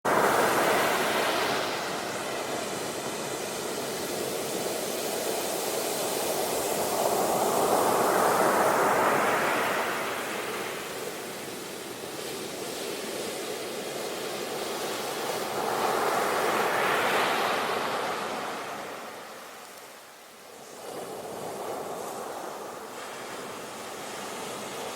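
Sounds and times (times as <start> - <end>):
ocean waves breaking: 0.1 - 4.7.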